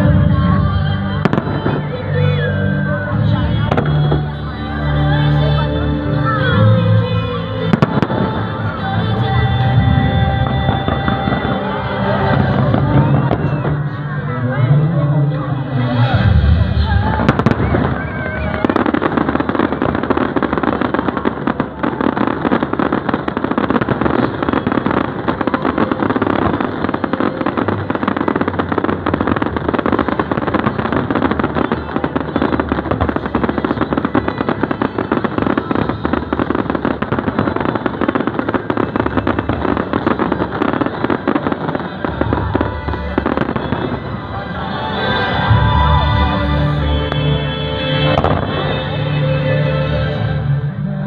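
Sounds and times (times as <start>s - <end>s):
fireworks crackling bangs: 7.7s - 14.0s, 16.4s - 49.2s.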